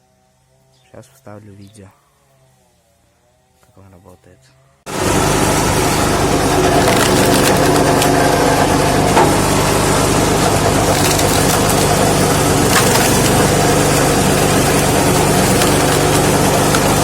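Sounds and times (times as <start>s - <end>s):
petrol engine running: 4.9s - 17.0s
wood cracking and splintering: 4.9s - 17.0s.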